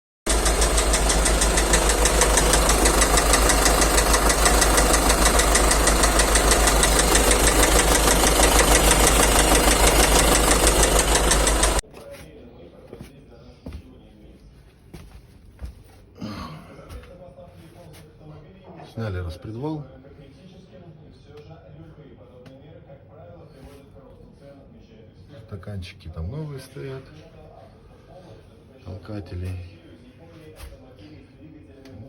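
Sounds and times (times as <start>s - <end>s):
diesel engine knocking: 0.3s - 11.8s.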